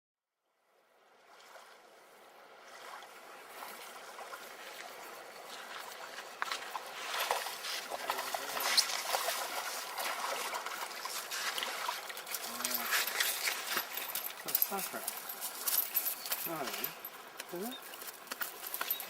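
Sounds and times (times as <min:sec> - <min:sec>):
water splashing and trickling: 0:00.9 - 0:19.0
sharp water splashes: 0:02.6 - 0:15.7.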